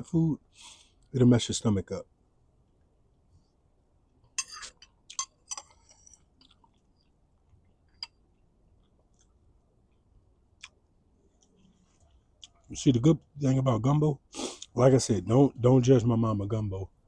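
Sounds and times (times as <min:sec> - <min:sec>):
faint crisp clicks and crunches: 0:04.8 - 0:08.2, 0:08.8 - 0:12.8.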